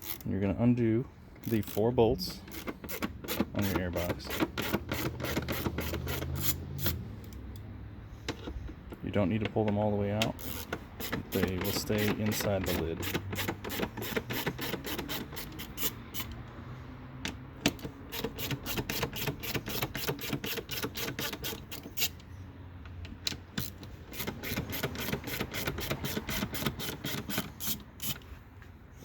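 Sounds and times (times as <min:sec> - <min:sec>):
ratchet clicking: 0:00.0 - 0:00.3, 0:01.4 - 0:07.6, 0:10.2 - 0:16.5, 0:17.3 - 0:22.3, 0:22.9 - 0:28.3.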